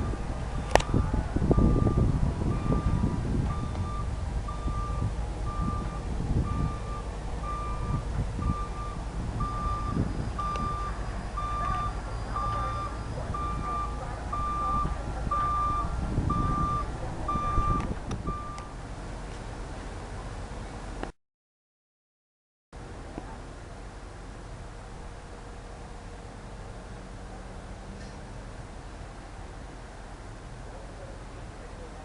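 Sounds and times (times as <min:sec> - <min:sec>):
reversing alarm beeping: 0:00.0 - 0:18.8
low engine rumble: 0:00.0 - 0:21.1, 0:22.8 - 0:32.0.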